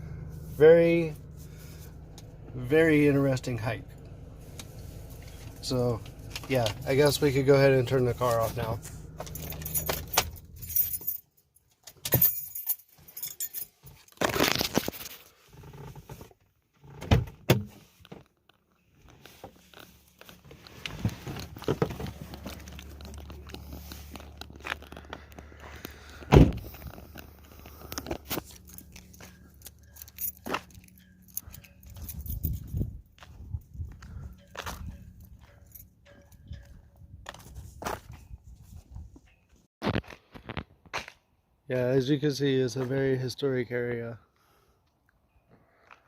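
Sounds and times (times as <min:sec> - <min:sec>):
car engine hum: 0:00.0 - 0:11.2, 0:18.9 - 0:37.8
keys jangling: 0:06.1 - 0:14.2, 0:26.7 - 0:33.3.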